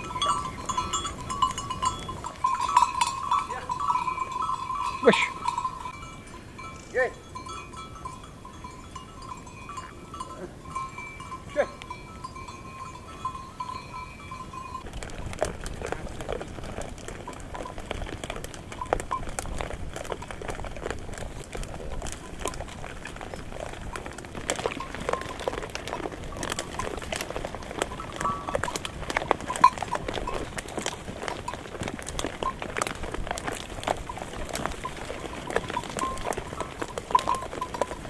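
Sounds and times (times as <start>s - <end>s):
goats and sheep calling: 0.0s - 6.0s
clatter of hooves: 0.0s - 38.0s.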